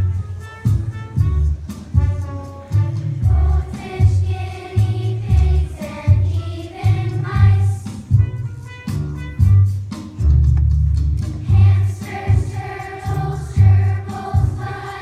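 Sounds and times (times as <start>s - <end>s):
choir singing: 3.2s - 8.0s, 11.4s - 15.0s
pulsing bass beat: 9.0s - 14.9s.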